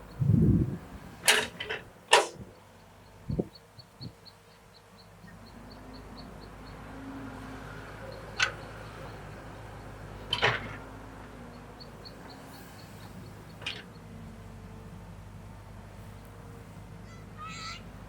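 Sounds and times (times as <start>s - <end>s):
excavator motor hum: 0.0s - 18.0s
metallic clanks: 1.2s - 2.4s, 10.3s - 10.8s.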